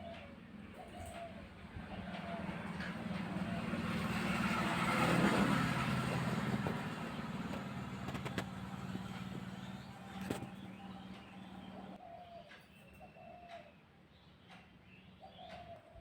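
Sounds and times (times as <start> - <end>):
vehicle engine passing: 1.8 - 12.0.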